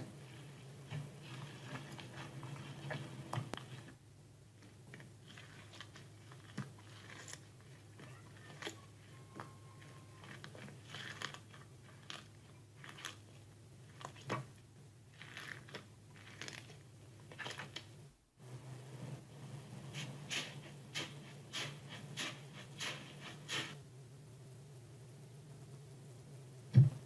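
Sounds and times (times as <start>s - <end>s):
slime squishing: 0.0s - 4.0s, 4.6s - 18.0s.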